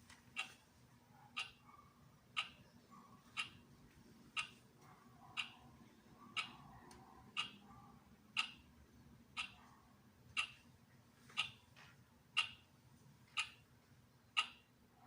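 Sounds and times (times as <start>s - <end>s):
clock ticking: 0.0s - 0.6s, 1.3s - 2.7s, 3.3s - 3.6s, 4.3s - 4.6s, 5.2s - 9.7s, 10.3s - 10.6s, 11.4s - 11.6s, 12.3s - 12.7s, 13.3s - 13.7s, 14.3s - 14.7s.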